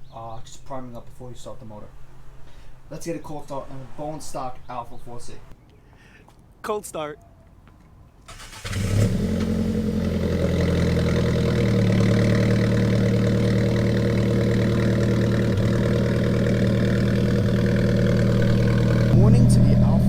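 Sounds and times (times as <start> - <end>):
car engine starting and idling: 8.3 - 20.0.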